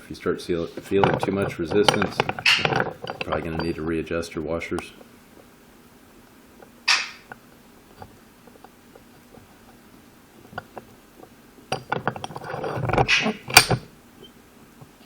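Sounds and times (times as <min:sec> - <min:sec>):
metal scraping: 0:00.6 - 0:05.5, 0:06.6 - 0:13.9
small metal parts clinking: 0:00.8 - 0:04.0, 0:10.4 - 0:13.9.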